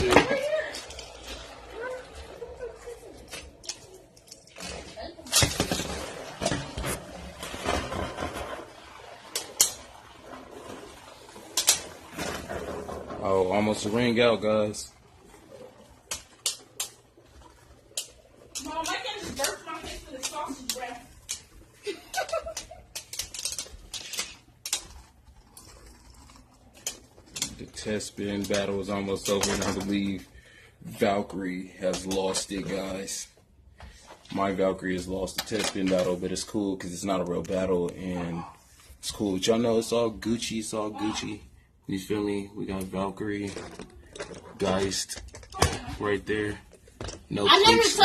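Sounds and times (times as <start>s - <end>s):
spinning tops whirring and rattling: 15.9s - 27.6s.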